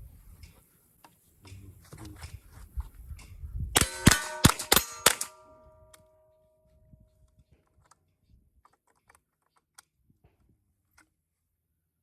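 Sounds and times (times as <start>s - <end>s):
rifle shots: 3.8s - 5.8s
steel target clanging: 3.8s - 6.0s.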